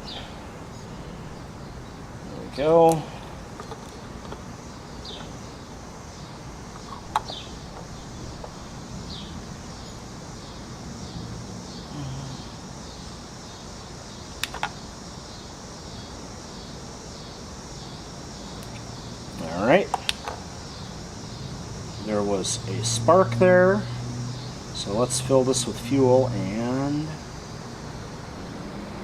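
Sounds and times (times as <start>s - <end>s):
bird chirping: 0.0s - 22.8s
cicadas droning: 0.0s - 29.0s
sharp clicks: 14.4s - 14.8s.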